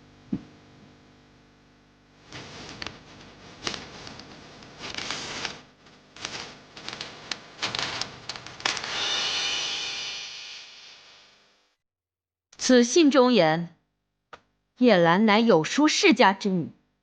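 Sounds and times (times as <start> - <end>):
paper crackling and rustling: 2.3 - 8.8.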